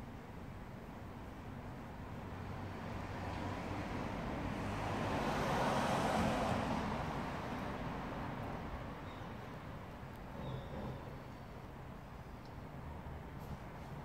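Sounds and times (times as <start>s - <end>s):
vehicle passing by: 2.4s - 9.0s.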